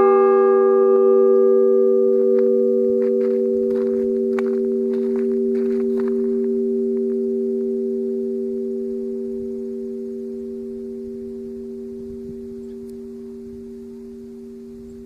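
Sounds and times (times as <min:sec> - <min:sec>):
fog bell humming: 0:00.0 - 0:15.0.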